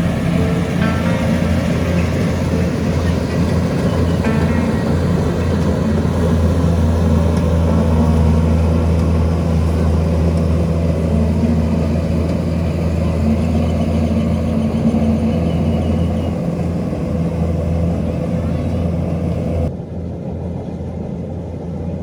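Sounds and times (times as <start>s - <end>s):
engine humming steadily: 0.0s - 22.0s.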